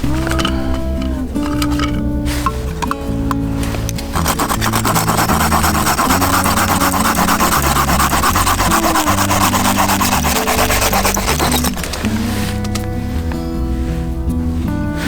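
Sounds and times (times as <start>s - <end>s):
background music: 0.0s - 15.0s
hand saw rasping through wood: 3.9s - 12.7s.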